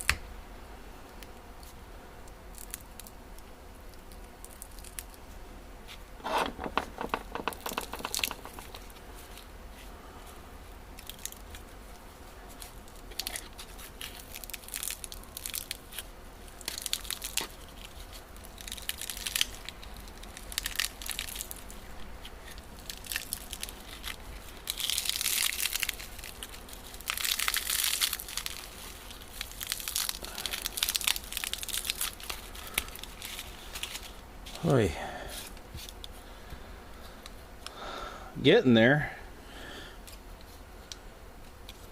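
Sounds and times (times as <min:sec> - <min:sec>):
adhesive tape peeling and tearing: 0:06.2 - 0:09.0, 0:12.6 - 0:21.8, 0:22.4 - 0:34.2.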